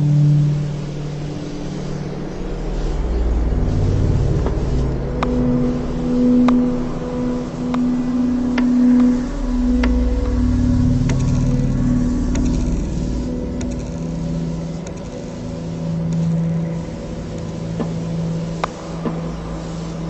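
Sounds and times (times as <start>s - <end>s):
low rumbling drone: 0.0s - 20.0s
sharp isolated ticks: 4.4s - 15.4s, 18.6s - 19.3s.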